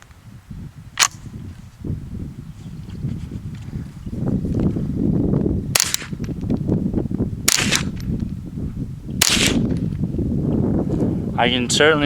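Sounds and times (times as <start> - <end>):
rifle shots: 5.7 - 6.2, 7.4 - 8.0, 9.2 - 9.8.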